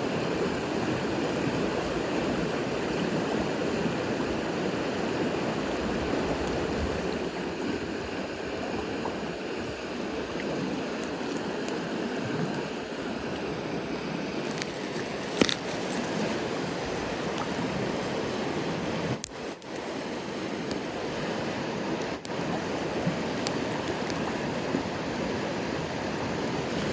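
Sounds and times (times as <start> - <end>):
mountain stream flowing: 0.0 - 26.9.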